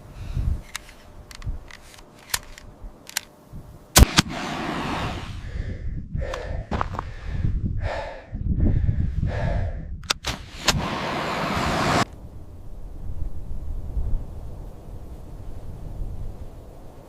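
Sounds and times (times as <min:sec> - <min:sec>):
flare gun clicks: 0:00.6 - 0:03.3, 0:04.0 - 0:04.4, 0:10.0 - 0:11.1
flare gun firing crack: 0:04.0 - 0:05.4, 0:10.2 - 0:12.1
hiss of rising flare: 0:04.0 - 0:05.6, 0:10.4 - 0:12.1.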